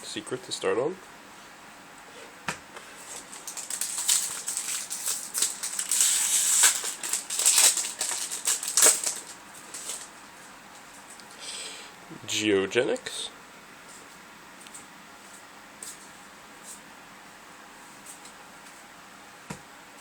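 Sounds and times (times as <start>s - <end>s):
cards being handled: 3.0s - 10.1s
foil pack crinkling and tearing: 3.0s - 10.3s.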